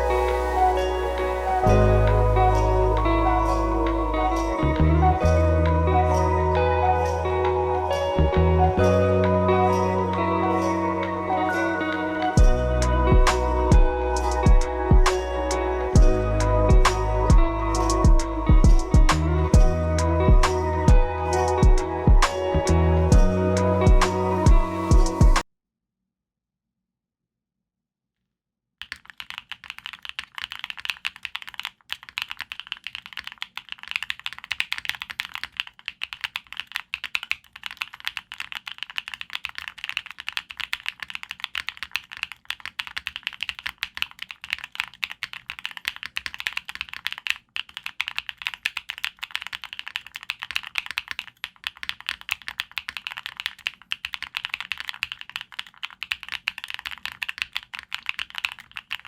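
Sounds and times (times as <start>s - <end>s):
mechanical keyboard typing: 11.5s - 23.3s, 28.8s - 59.0s.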